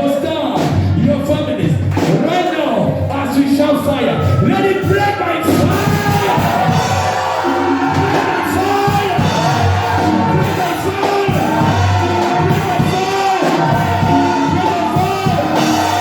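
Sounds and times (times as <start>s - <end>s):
congregation singing: 2.0s - 16.0s
sustained instrument chords: 2.7s - 16.0s.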